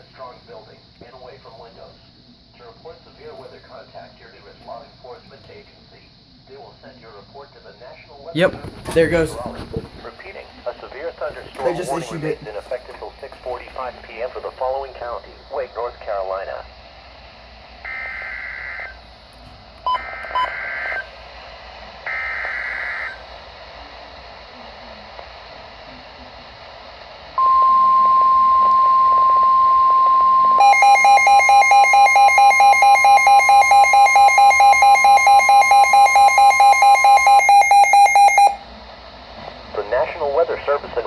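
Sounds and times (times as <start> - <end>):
steady warning tone: 17.8 - 19.1, 19.8 - 21.2, 27.4 - 38.7
rapid electronic beeping: 27.4 - 38.6.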